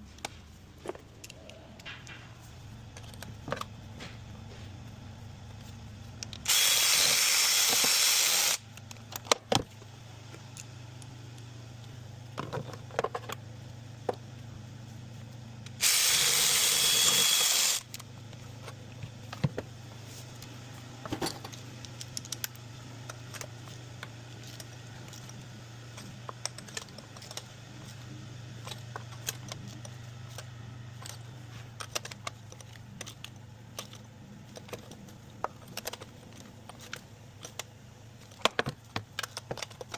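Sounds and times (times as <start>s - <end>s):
steady low hum: 0.0s - 39.9s
power tool bursts: 6.5s - 8.6s, 15.8s - 17.9s.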